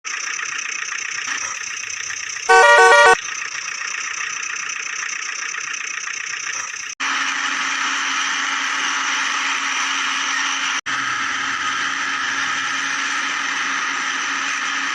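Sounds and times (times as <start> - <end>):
engine-like drone: 0.1 - 14.9
drone with low hum: 2.5 - 3.2
vehicle horn honk: 2.5 - 3.2.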